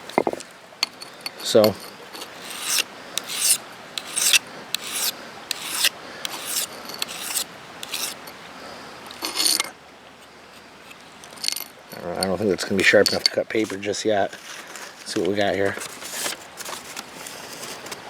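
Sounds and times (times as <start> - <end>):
knife scraping on sharpening stone: 0.9 - 8.4.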